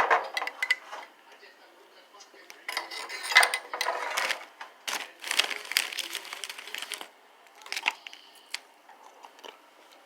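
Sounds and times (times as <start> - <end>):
utensils scraping and clicking on dish: 2.7 - 4.4.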